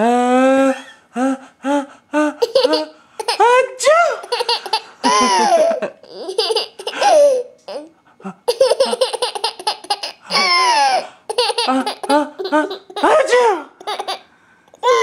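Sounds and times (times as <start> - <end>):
young child laughing: 4.2 - 14.2.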